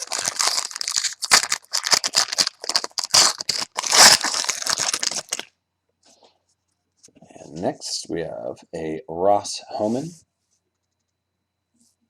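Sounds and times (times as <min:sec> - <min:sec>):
foil wrapper crinkling and tearing: 0:00.0 - 0:05.5.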